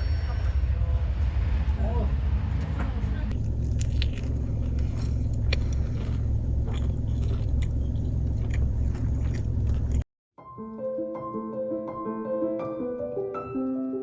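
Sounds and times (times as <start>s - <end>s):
steady low rumble: 0.0s - 10.0s
crunchy biting and chewing: 3.3s - 10.1s.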